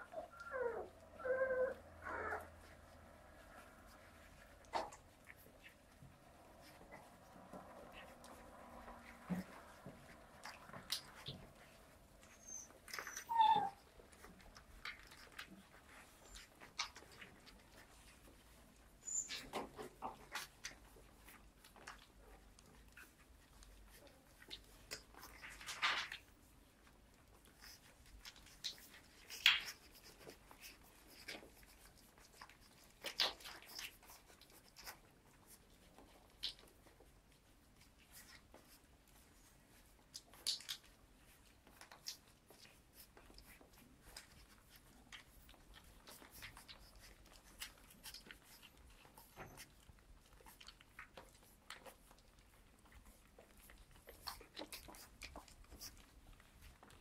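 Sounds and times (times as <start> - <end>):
puppies squeaking: 0.0 - 2.8, 3.9 - 21.9, 45.2 - 52.0
puppies rustling: 0.0 - 57.0.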